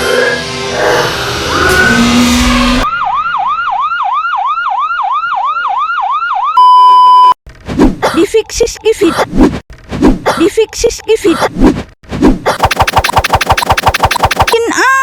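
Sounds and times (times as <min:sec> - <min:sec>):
fast warbling siren: 0:12.6 - 0:14.6
loud steady beep: 0:12.6 - 0:14.6.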